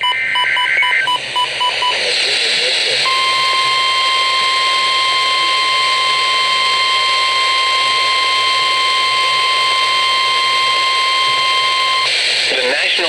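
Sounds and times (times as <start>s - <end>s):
radio static hiss: 0.0s - 13.0s
steady high alarm tone: 3.0s - 12.2s.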